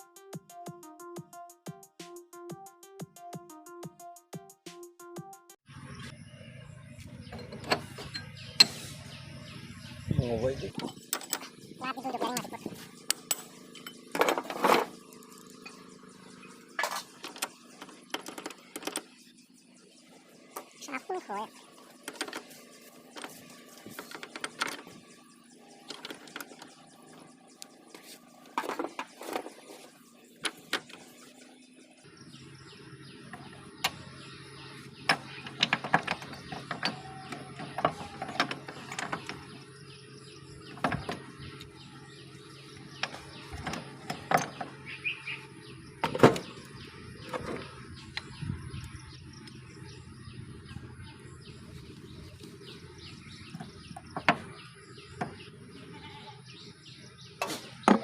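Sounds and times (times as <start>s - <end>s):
metal tools clinking: 7.3s - 8.8s, 10.7s - 15.8s.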